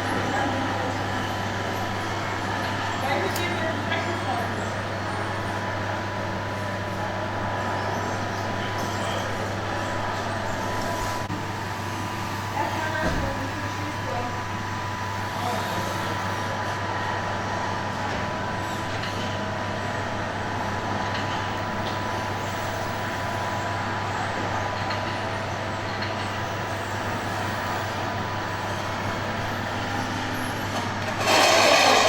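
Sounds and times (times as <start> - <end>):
steady mechanical drone: 0.0 - 32.0.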